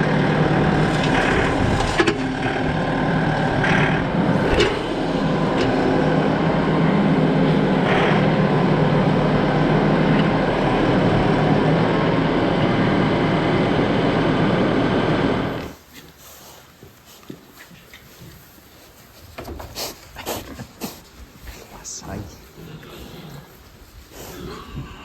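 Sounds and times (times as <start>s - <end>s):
vehicle engine running: 0.0s - 15.8s.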